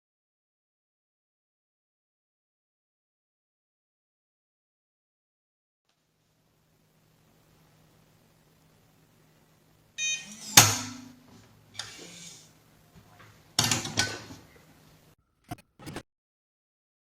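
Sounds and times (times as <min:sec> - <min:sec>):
short electronic beep: 0:15.5 - 0:16.0.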